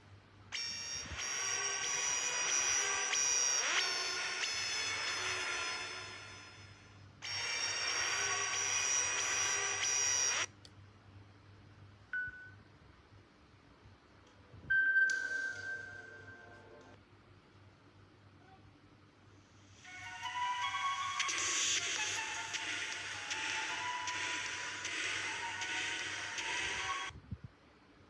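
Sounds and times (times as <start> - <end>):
bell-like tone: 14.9 - 16.7
electronic ringtone melody: 19.9 - 27.0.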